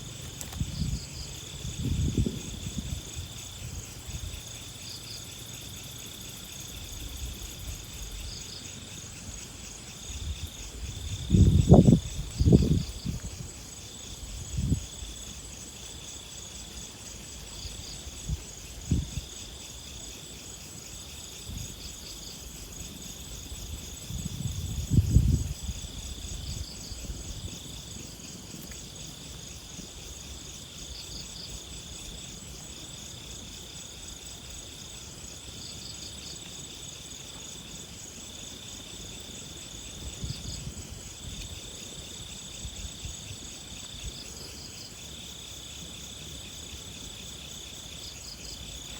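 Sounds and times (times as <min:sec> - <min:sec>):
insect long trills: 0:00.0 - 0:48.9.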